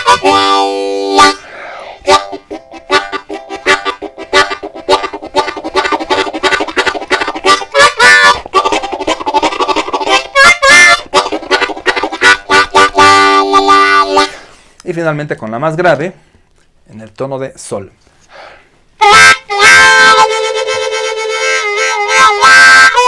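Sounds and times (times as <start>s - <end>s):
harmonica train chugging: 0.0s - 14.4s, 19.0s - 23.0s
harmonica held chord: 0.0s - 14.6s, 19.0s - 23.0s
harmonica whistle glides: 0.0s - 14.6s, 19.0s - 23.0s.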